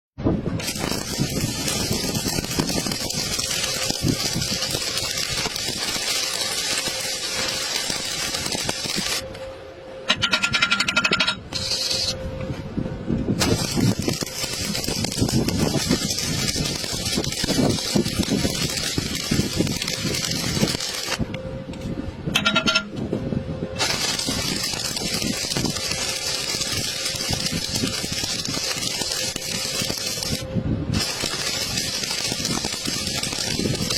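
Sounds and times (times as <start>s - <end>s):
rapid pulsing buzz: 0.3s - 10.1s, 11.4s - 22.3s, 23.1s - 33.9s
welding arc crackling: 0.5s - 9.3s, 11.0s - 12.2s, 13.4s - 21.4s, 23.8s - 33.9s
brief tone: 9.2s - 13.2s.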